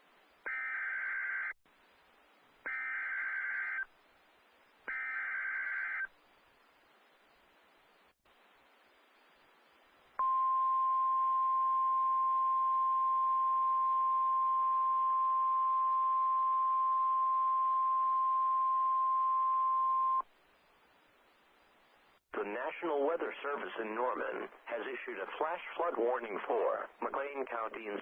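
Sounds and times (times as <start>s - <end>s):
faint radio hiss: 0.0s - 0.6s, 1.7s - 28.0s.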